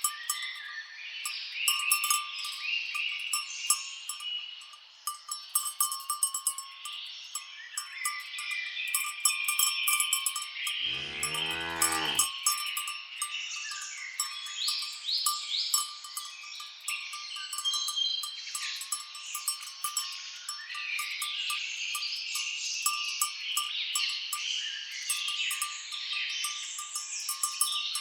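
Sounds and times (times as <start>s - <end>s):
cattle bells clinking: 0.0s - 28.0s
birds chirping and calling: 10.8s - 12.3s
cow mooing: 10.8s - 12.3s.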